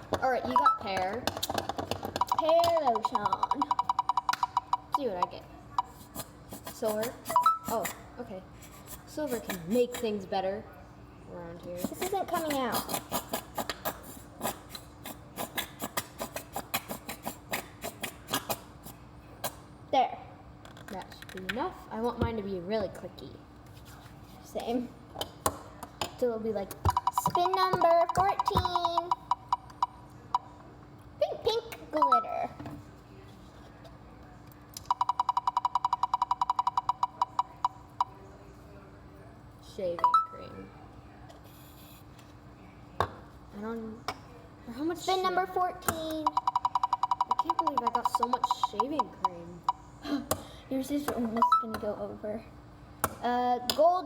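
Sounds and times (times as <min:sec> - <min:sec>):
container tapped and shaken: 0:00.1 - 0:05.0.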